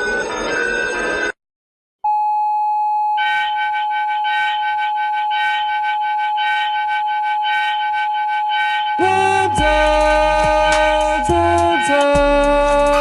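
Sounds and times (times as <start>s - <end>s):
steady electronic alert tone: 3.1s - 13.0s
pulsing electronic beeping: 3.2s - 12.0s.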